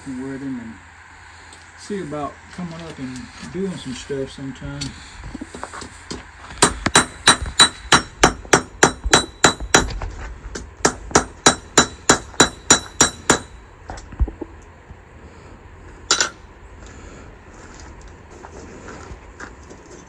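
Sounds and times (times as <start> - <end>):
hammer clanging on anvil: 6.6 - 10.0, 10.9 - 13.6, 16.1 - 16.4.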